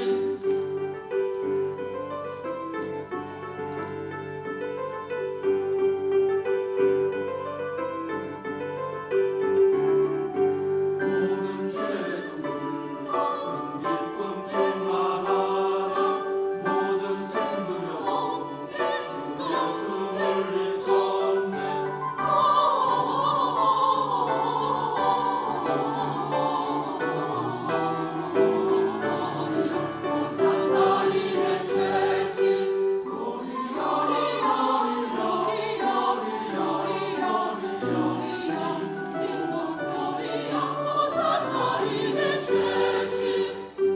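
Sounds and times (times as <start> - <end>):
choir singing slow song: 0.0 - 3.9, 10.3 - 43.9
piano accompaniment: 0.0 - 43.9
voice singing with wide vibrato: 11.0 - 43.8.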